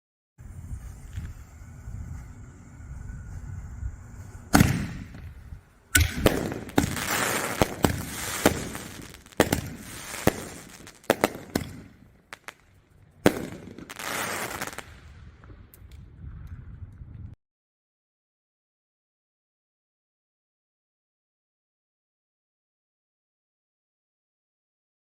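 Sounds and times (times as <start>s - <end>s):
sharp firework reports with crackling: 0.4s - 16.4s
firework pops: 4.5s - 5.3s, 6.0s - 12.7s, 13.3s - 16.0s
loud firework bangs: 4.5s - 12.6s, 13.2s - 15.0s.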